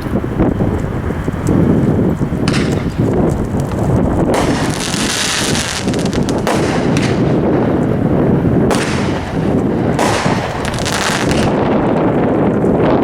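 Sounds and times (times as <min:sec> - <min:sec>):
firework barrage bursting and crackling: 0:00.0 - 0:13.0
loud firework reports: 0:02.4 - 0:13.0.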